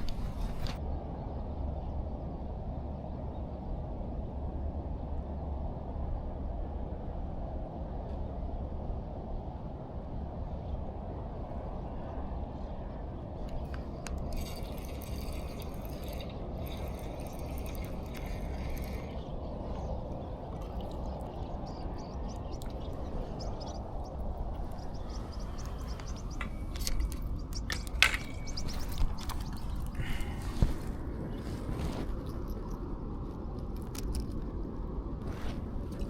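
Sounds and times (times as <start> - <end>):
low wind rumble: 0.0 - 36.0
fishing reel ticking: 13.7 - 19.1.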